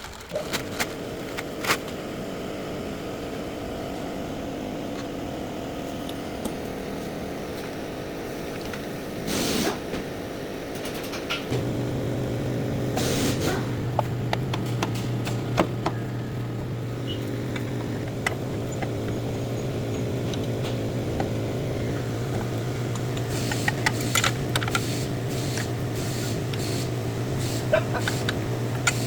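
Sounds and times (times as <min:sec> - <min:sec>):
low machine hum: 0:00.3 - 0:29.0
short hissing bursts: 0:09.2 - 0:09.9, 0:11.6 - 0:13.9, 0:23.2 - 0:29.0
sharp clicks and knocks: 0:10.7 - 0:11.9, 0:13.0 - 0:21.5, 0:22.2 - 0:26.7, 0:27.7 - 0:29.0.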